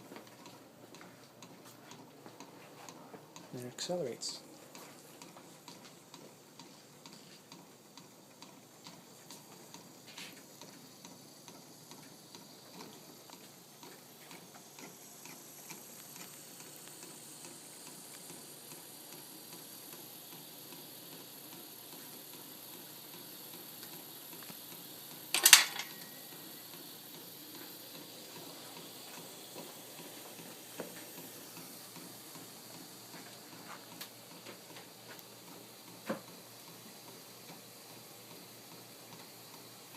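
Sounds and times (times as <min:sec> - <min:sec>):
loud sharp click: 0:25.4 - 0:26.1.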